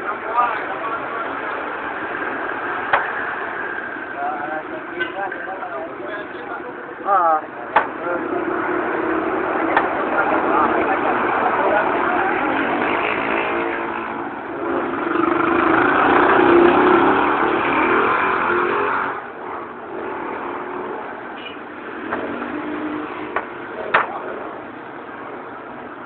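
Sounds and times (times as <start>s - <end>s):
vehicle engine passing by: 8.1s - 19.2s.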